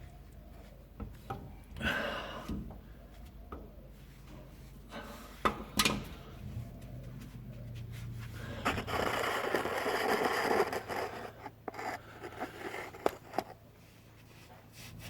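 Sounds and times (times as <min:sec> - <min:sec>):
tool scraping: 0:08.6 - 0:13.6.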